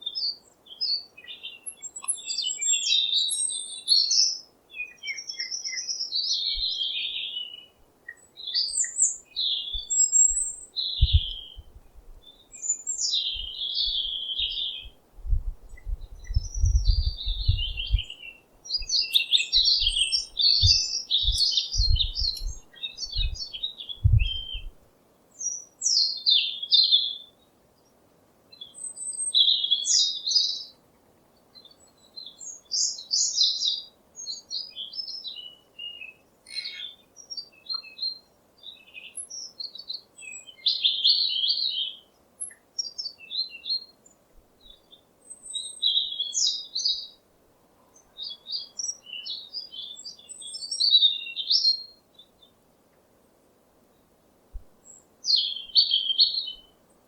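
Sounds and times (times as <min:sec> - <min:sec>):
songbirds chirping and twittering: 0:00.0 - 0:57.0
low thuds: 0:20.6 - 0:22.6, 0:24.0 - 0:24.7.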